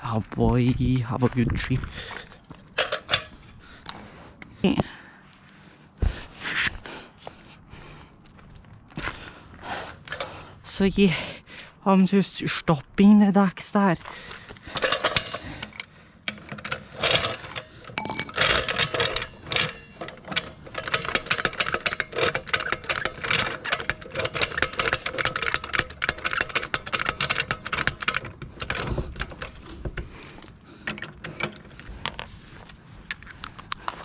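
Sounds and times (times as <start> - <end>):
tools clicking and rattling on metal: 0.8 - 5.0, 9.9 - 10.8, 13.9 - 34.0.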